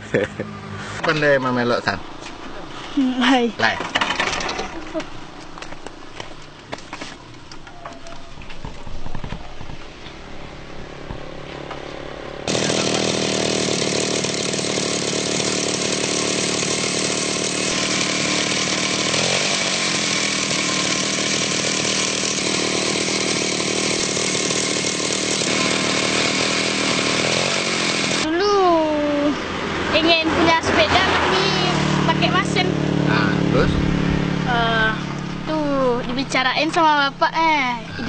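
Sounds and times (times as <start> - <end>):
two-stroke engine at high revs: 12.4 - 28.3, 30.0 - 35.9.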